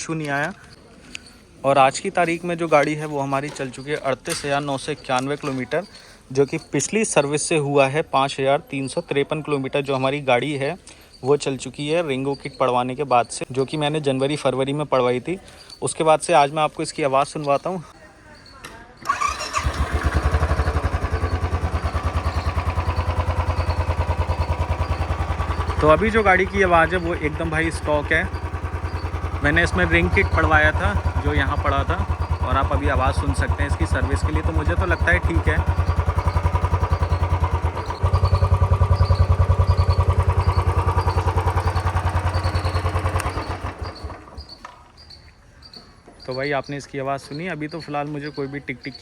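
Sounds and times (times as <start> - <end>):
motorcycle engine starting and idling: 19.0 - 45.1.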